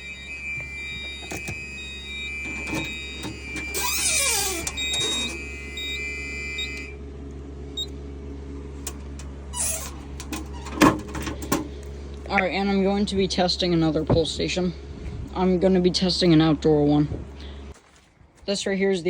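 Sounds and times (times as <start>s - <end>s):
fire alarm tone and beeps: 0.0s - 7.0s.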